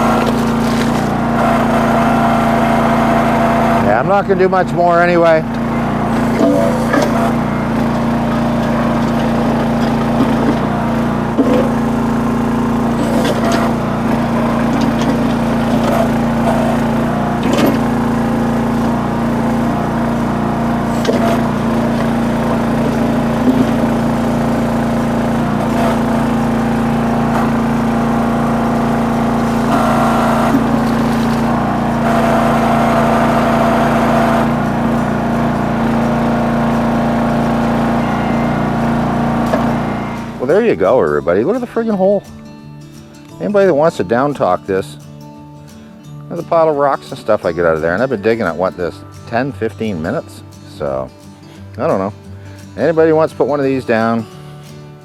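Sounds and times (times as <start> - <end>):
bucket knocking and scraping rocks: 0.0 - 4.4, 5.4 - 34.4
small engine running: 0.0 - 55.0.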